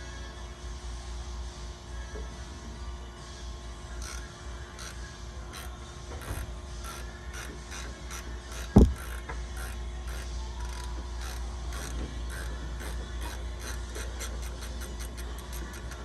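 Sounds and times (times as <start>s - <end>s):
socket ratchet clicking: 4.0s - 16.0s
heavy thump: 8.8s - 9.0s.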